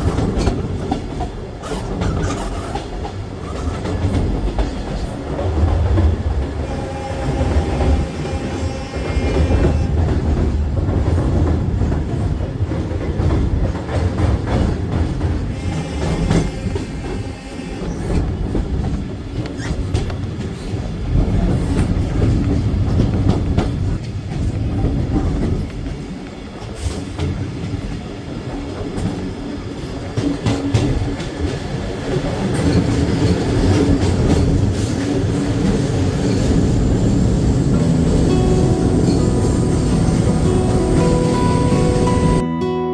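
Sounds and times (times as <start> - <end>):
train wheels clattering: 0.0 - 42.4
train low rumble: 0.0 - 42.7.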